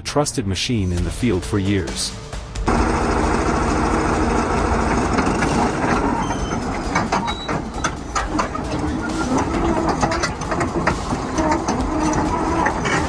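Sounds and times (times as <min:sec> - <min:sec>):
metallic clanking of steel tracks: 0:01.9 - 0:13.0
bulldozer diesel rumble: 0:02.7 - 0:13.0.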